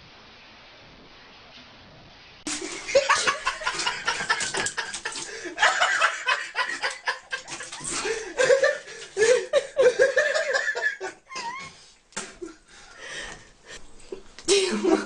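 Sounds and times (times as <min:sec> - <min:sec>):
people laughing: 0:02.5 - 0:11.6, 0:14.5 - 0:15.0.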